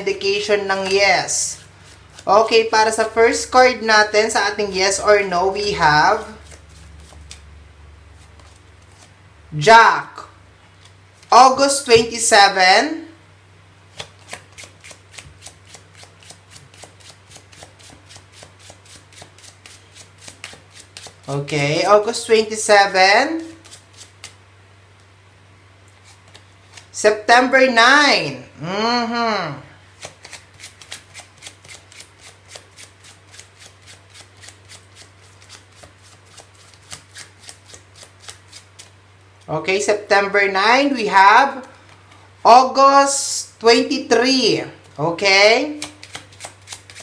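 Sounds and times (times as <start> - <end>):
faint electrical hum: 0.0 - 47.0
playing cards being shuffled: 0.7 - 2.7, 5.7 - 7.6, 8.2 - 9.2, 13.9 - 21.3, 23.4 - 24.4, 26.0 - 27.0, 29.9 - 39.0, 45.7 - 47.0.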